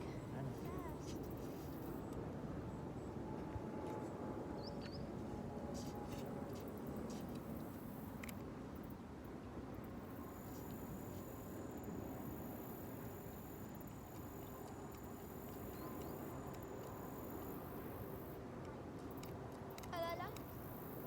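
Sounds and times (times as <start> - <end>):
outdoor background noise: 0.0 - 21.0
light ticks: 14.1 - 17.6, 18.6 - 20.6.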